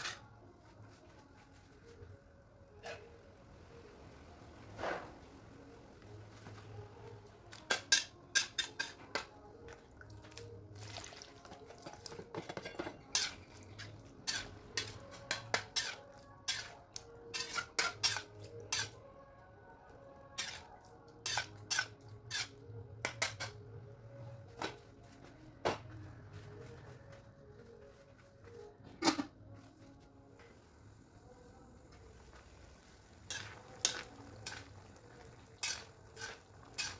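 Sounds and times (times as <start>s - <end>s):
utensils and cookware clinking: 7.5s - 19.1s, 20.3s - 23.7s, 33.2s - 36.9s.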